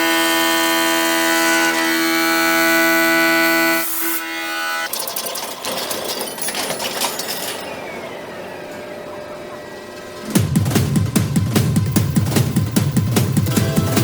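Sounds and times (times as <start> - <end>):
machine tool clicking clatter: 4.9 - 8.2
music with held notes: 9.5 - 14.0.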